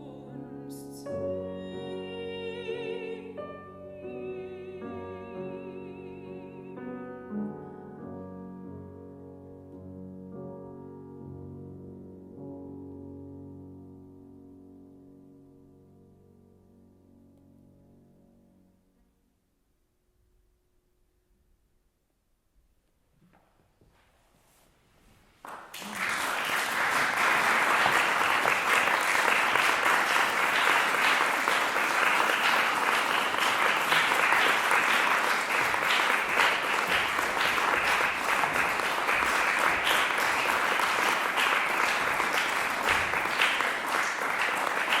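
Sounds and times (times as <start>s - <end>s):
audience applauding: 25.5s - 45.0s.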